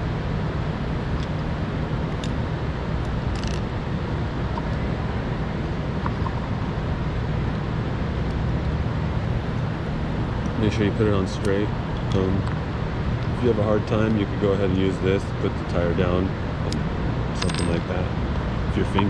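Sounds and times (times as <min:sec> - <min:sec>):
low hum: 0:00.0 - 0:19.0
small plastic parts clicking: 0:03.3 - 0:03.6.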